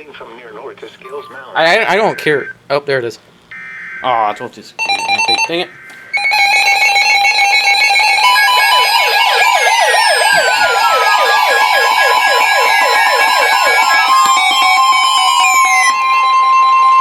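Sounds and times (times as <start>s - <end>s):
beeping alarm tones: 1.6s - 2.6s, 3.5s - 17.0s
electronic siren yelp: 1.7s - 2.6s, 3.5s - 17.0s
siren wails gliding down: 4.8s - 17.0s
steady electronic tone: 4.8s - 17.0s.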